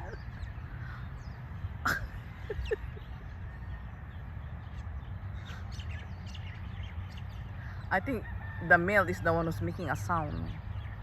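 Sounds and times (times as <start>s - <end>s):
bird calls: 0.0s - 8.6s.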